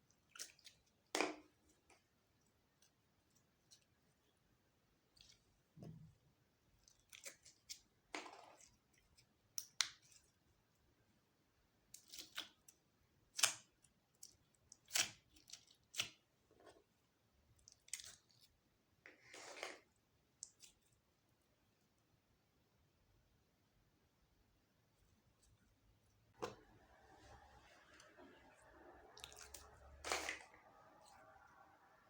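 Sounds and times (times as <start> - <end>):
sticky slime squelches: 25.0 - 32.0.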